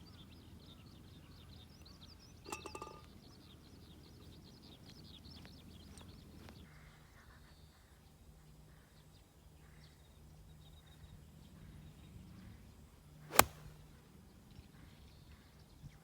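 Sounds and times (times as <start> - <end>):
golf club striking ball: 13.3 - 13.8.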